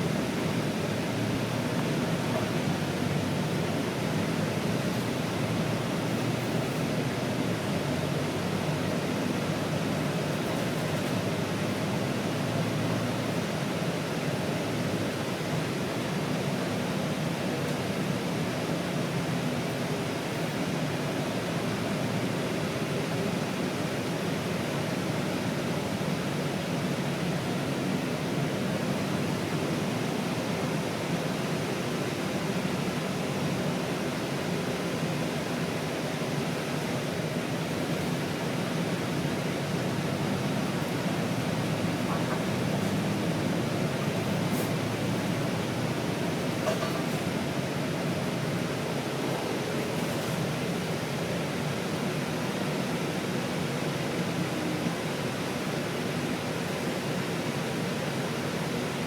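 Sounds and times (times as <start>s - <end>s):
air-conditioning rush: 0.0s - 59.0s
bus hum: 39.6s - 47.5s.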